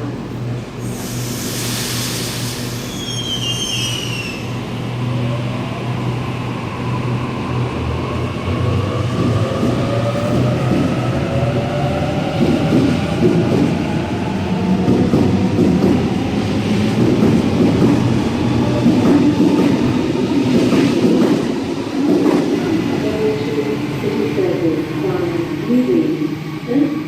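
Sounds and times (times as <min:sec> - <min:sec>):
air hiss: 0:00.8 - 0:04.2
brief falling squeal: 0:02.8 - 0:04.5.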